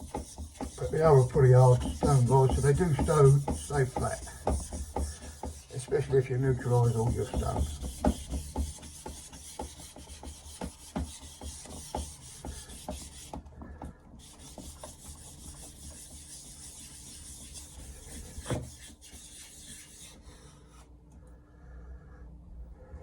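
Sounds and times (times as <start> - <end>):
plate rasping on whetstone: 0.0 - 13.4.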